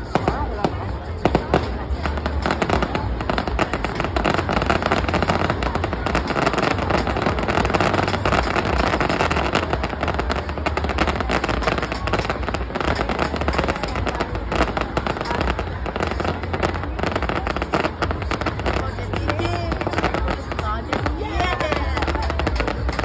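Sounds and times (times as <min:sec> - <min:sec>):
fireworks crackling pops: 0:00.0 - 0:23.0.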